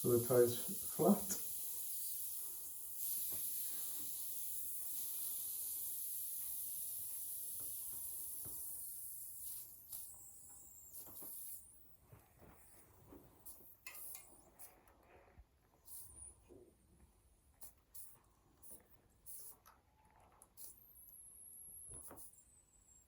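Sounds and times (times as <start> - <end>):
air hissing from tyre valve: 0.0 - 12.8, 13.4 - 15.2, 15.8 - 16.4, 17.6 - 19.6.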